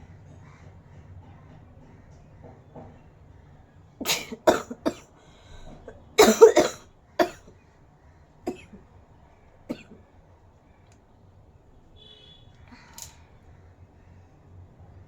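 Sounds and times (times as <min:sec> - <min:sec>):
woman coughing: 0:04.0 - 0:05.1, 0:06.2 - 0:07.4, 0:08.5 - 0:08.8, 0:09.7 - 0:10.0.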